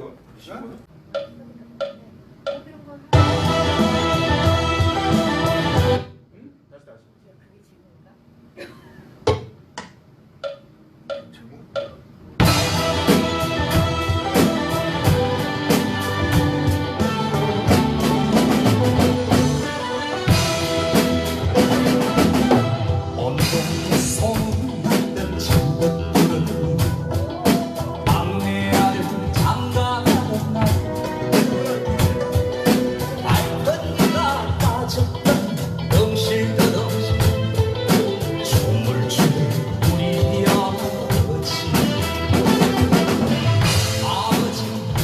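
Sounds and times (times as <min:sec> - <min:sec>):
band backing track with drums: 0:00.5 - 0:06.3, 0:08.5 - 0:45.0
drumstick clicks: 0:09.8 - 0:12.0.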